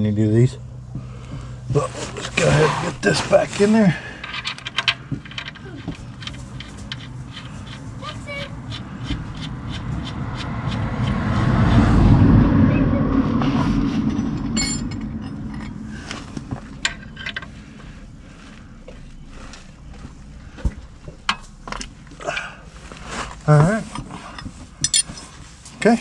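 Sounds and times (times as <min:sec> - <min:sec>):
vehicle passing by: 0:07.2 - 0:16.8.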